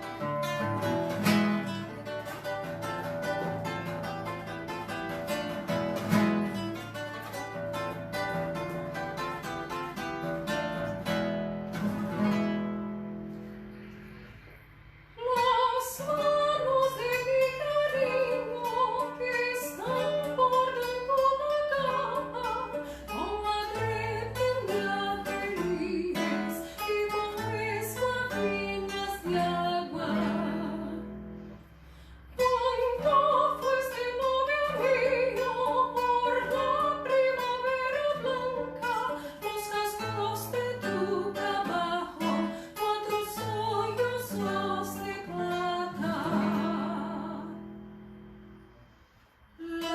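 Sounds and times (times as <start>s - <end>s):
acoustic guitar: 0.0s - 49.9s
woman singing with vibrato: 15.1s - 31.4s, 32.4s - 47.9s, 49.6s - 49.9s.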